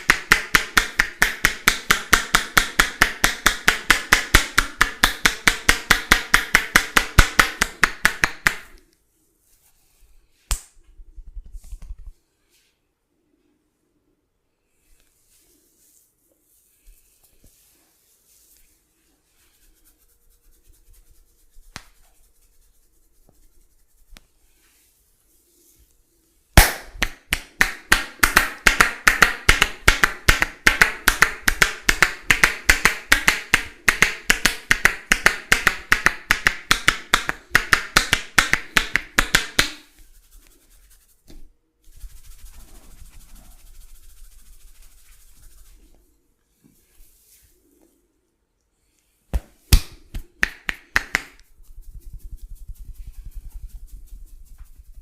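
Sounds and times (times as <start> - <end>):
hand slaps on body: 10.5 - 10.8, 21.7 - 22.0, 26.6 - 39.9, 49.3 - 51.4.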